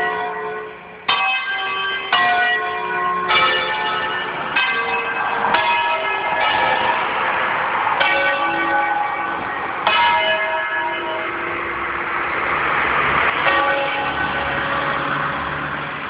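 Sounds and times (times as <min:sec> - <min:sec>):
church bells pealing: 0:00.0 - 0:16.0
motor vehicle hum: 0:04.0 - 0:16.0.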